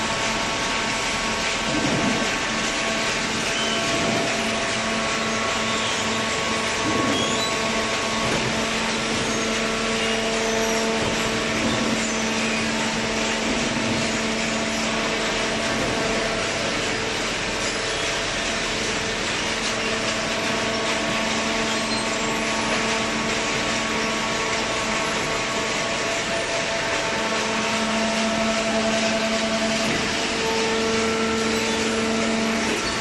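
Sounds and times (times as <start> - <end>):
baler machine humming: 0.0 - 33.0.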